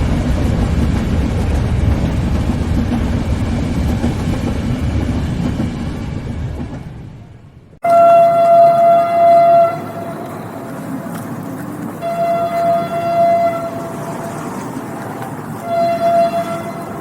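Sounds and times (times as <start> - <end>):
moving train rumble: 0.0 - 17.0
train horn blasts: 7.8 - 10.6, 12.0 - 14.1, 15.6 - 17.0.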